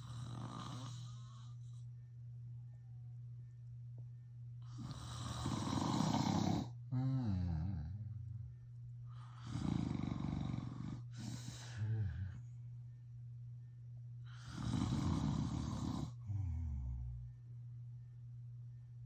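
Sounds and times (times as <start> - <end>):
man snoring loudly: 0.0 - 1.4, 4.7 - 8.1, 9.4 - 12.4, 14.4 - 17.1.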